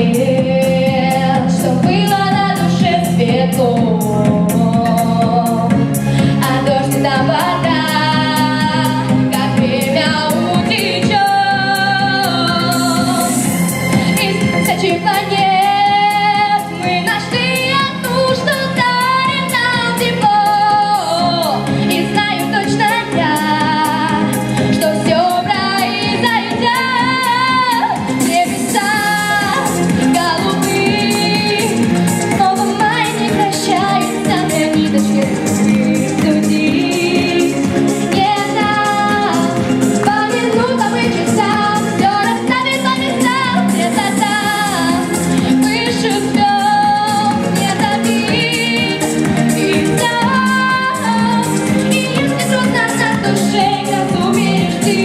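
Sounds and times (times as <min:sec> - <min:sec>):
backing track with steady beat: 0:00.0 - 0:55.0
woman singing pop song: 0:00.0 - 0:55.0.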